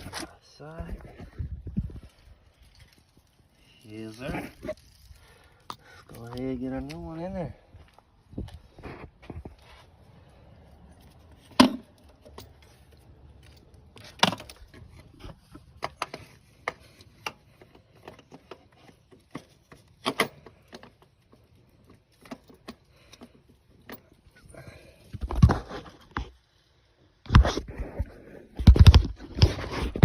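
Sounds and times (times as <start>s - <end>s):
metal parts and hand tools clanking: 11.0s - 24.5s.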